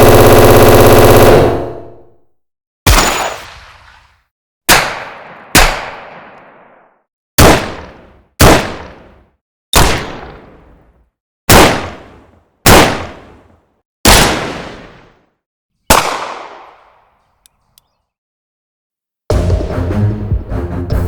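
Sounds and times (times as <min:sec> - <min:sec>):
gunshots with reverberant tail: 0:00.0 - 0:02.1, 0:04.7 - 0:09.2, 0:09.8 - 0:10.7, 0:11.5 - 0:13.3, 0:15.9 - 0:17.2
music: 0:19.3 - 0:21.0.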